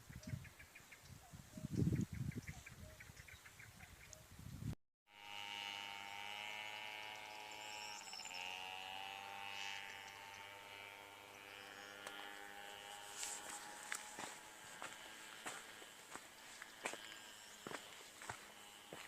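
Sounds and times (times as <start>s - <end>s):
steady motor hum: 5.1s - 19.0s.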